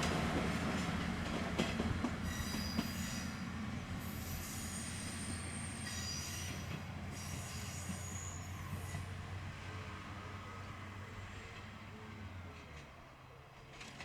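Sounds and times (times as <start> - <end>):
low railcar rumble: 0.0 - 14.0
train wheel squeal: 2.1 - 9.3.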